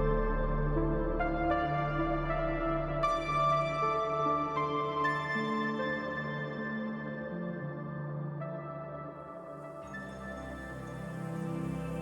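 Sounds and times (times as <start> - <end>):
calm new-age music: 0.0 - 12.0.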